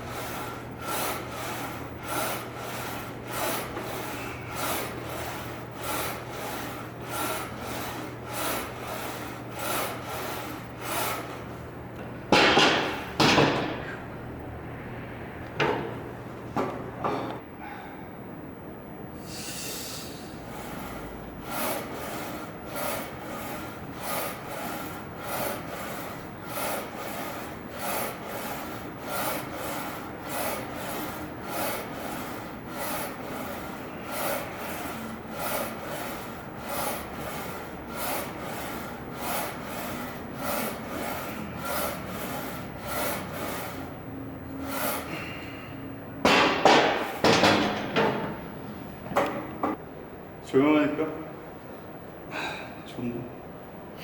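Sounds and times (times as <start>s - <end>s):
weight machine rubbing and sliding: 0.0s - 11.8s, 19.8s - 49.8s.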